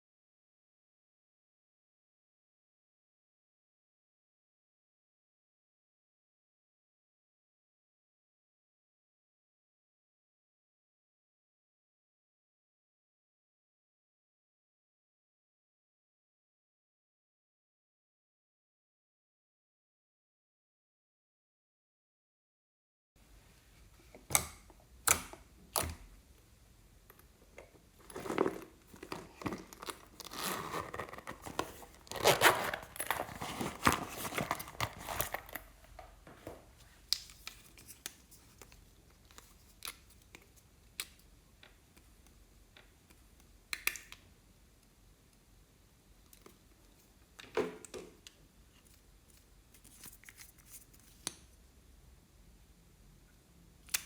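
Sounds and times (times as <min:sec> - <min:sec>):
crinkling and tearing: 0:28.0 - 0:35.7.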